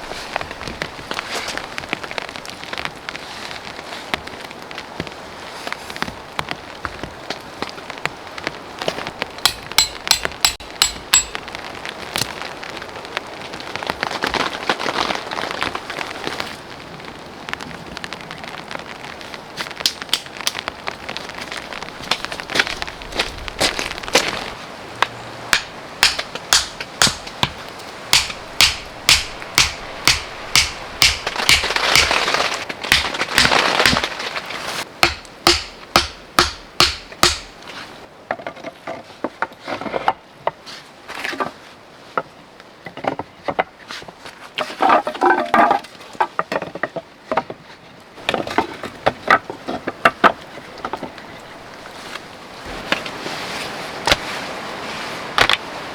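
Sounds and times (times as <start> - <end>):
sharp knocks: 9.4 - 11.4, 25.5 - 32.2, 35.0 - 37.6.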